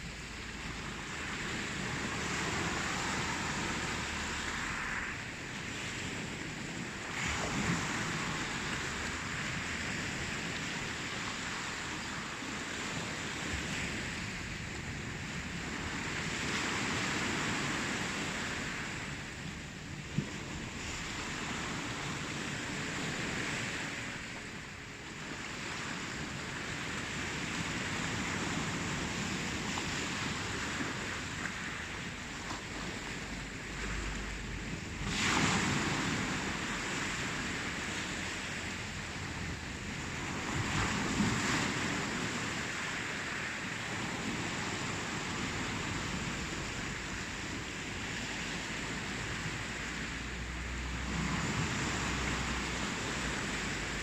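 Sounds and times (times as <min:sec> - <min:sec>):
wave breaking: 0:00.0 - 0:14.7, 0:25.4 - 0:54.0
ocean waves washing: 0:00.0 - 0:54.0.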